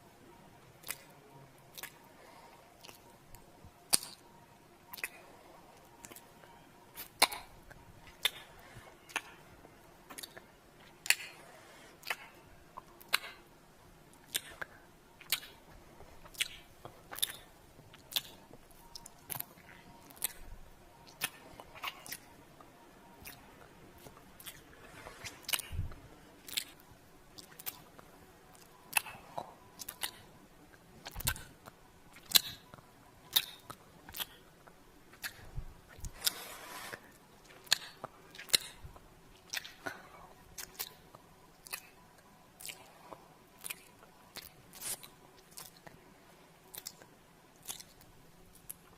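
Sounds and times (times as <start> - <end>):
wet lip smacks and kisses: 1.7 - 2.0, 33.3 - 34.4, 39.4 - 39.9, 47.6 - 48.8.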